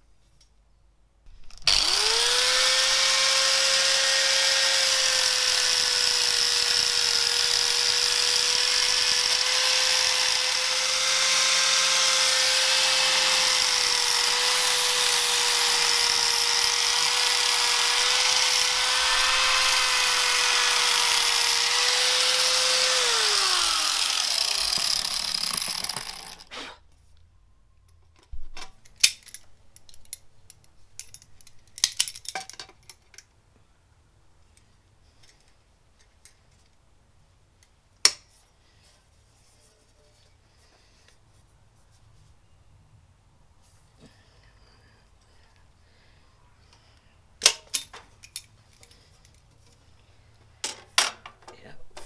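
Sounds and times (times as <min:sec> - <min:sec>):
angle grinder whining: 0:01.5 - 0:26.5.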